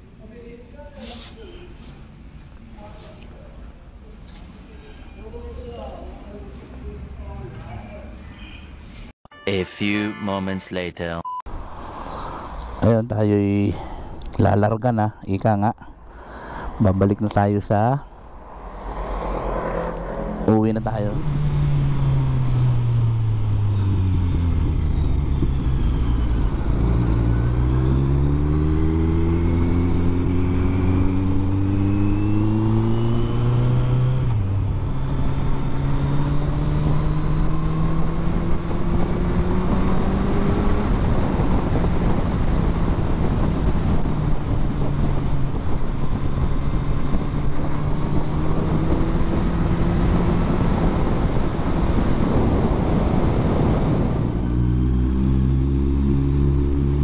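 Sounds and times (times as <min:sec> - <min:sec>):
wind noise rushing: 0:18.0 - 0:55.2
motorcycle engine under way: 0:19.8 - 0:57.0.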